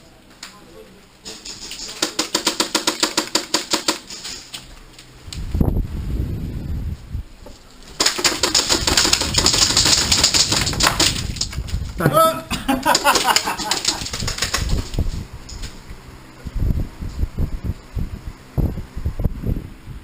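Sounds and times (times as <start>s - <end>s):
airsoft guns full-auto bursts: 2.0s - 4.0s, 8.0s - 11.2s
person shouting: 12.0s - 12.5s.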